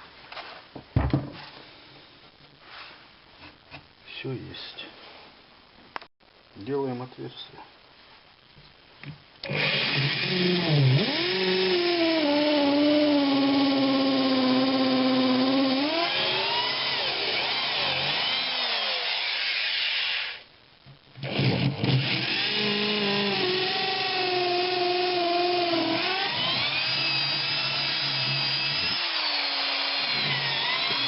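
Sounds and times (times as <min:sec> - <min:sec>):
electric drill boring: 0:09.4 - 0:20.4, 0:21.2 - 0:31.0.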